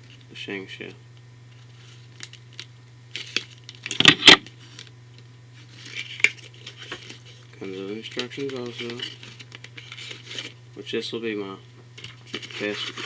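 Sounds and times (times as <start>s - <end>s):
steady low hum: 0.0s - 13.0s
packaging scraping and tearing: 1.8s - 4.9s, 5.6s - 10.6s, 12.0s - 13.0s
plastic packaging clicks and rustles: 2.1s - 4.9s, 5.7s - 10.6s, 12.0s - 13.0s.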